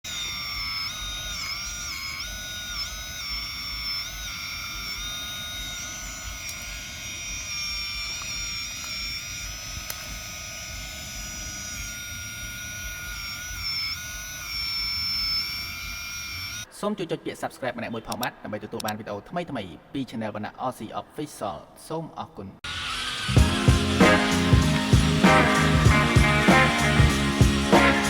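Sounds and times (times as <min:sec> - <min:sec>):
hydraulic pump whining: 0:00.0 - 0:16.7, 0:22.6 - 0:28.0.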